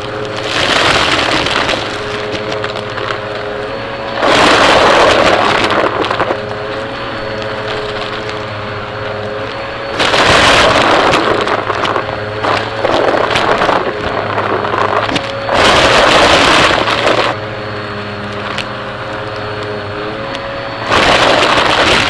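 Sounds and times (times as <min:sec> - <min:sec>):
rushing suction with crackles: 0:00.0 - 0:22.0
vacuum cleaner motor hum: 0:00.0 - 0:22.0.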